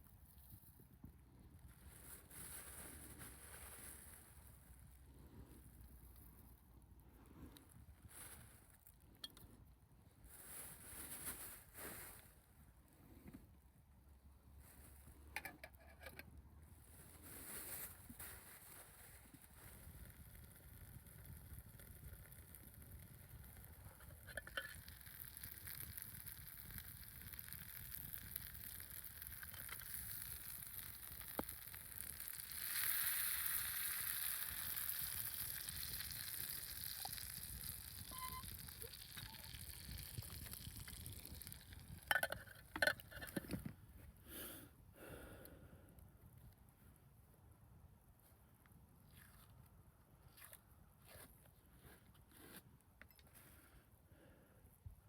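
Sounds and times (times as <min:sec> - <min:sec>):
sizzling hiss over campfire: 0:01.5 - 0:05.0, 0:10.4 - 0:12.4, 0:16.8 - 0:43.4
fire crackling and snapping: 0:17.6 - 0:42.8.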